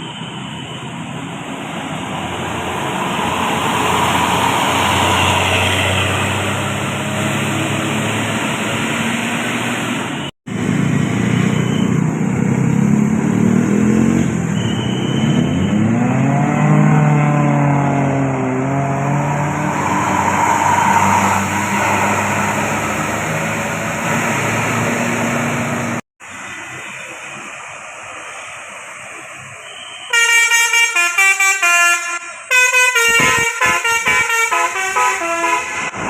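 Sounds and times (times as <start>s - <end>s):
road and tyre noise: 0.0s - 36.0s
bus diesel engine revving: 1.4s - 26.0s.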